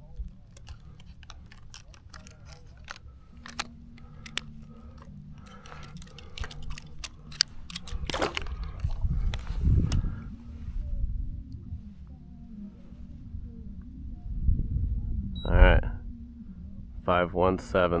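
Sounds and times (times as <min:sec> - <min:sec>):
sharp clicks and crackles: 0:00.0 - 0:10.2
low handling rumble: 0:00.0 - 0:18.0.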